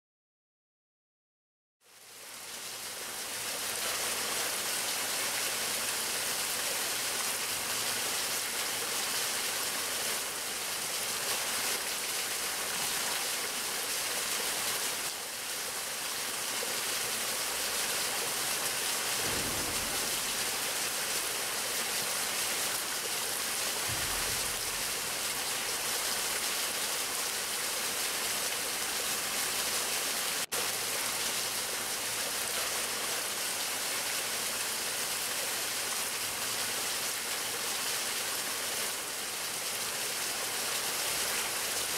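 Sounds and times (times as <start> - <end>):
steady rain-like hiss: 1.8 - 41.9
dull low thuds: 19.2 - 21.0, 23.9 - 25.3.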